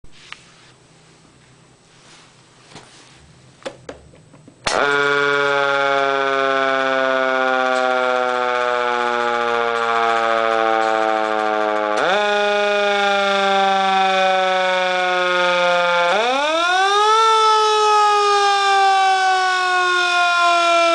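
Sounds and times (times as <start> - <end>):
mechanical siren winding down: 4.7 - 20.9.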